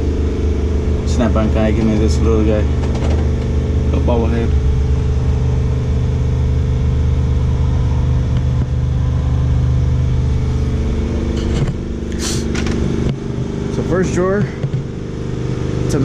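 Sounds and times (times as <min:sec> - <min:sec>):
machinery humming: 0:00.0 - 0:16.0.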